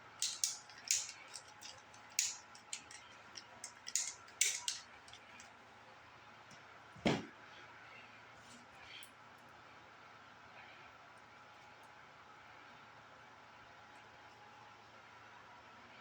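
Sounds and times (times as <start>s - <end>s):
clicks and scrapes of bearing parts: 0.0s - 5.5s.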